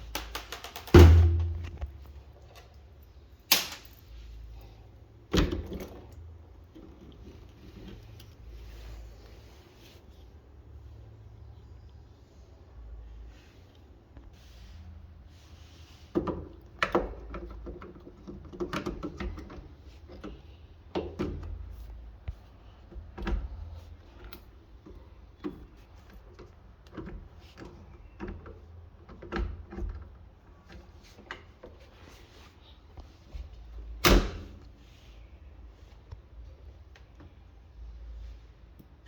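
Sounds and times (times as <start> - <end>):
hard parts knocking and rattling: 0.0 - 2.7.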